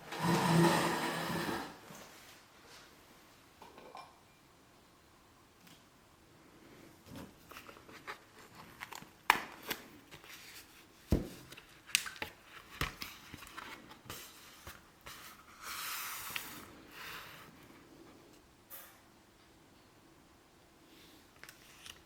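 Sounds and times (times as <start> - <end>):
hands handling art supplies: 7.0 - 17.9.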